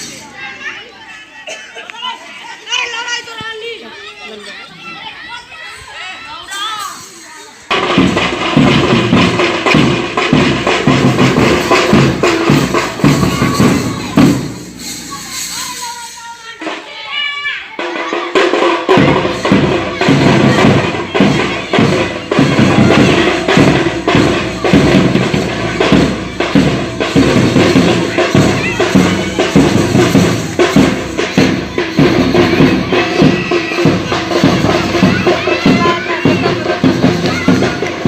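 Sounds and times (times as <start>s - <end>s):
dhol drums beating: 7.7s - 38.0s.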